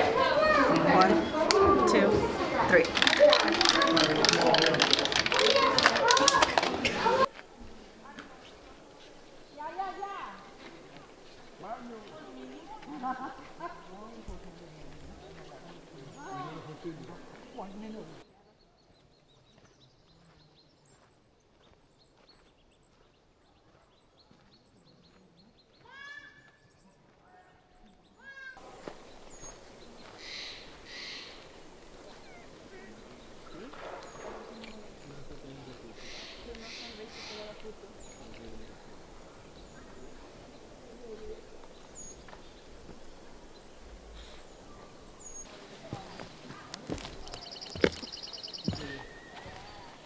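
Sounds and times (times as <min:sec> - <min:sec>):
faint distant voices: 0:00.0 - 0:18.8, 0:28.6 - 0:50.0
faint high bird chirps: 0:28.3 - 0:50.0.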